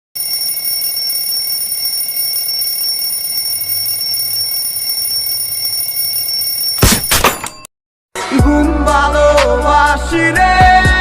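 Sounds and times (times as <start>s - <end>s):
high-pitched electronic ringtone: 0.2s - 6.8s.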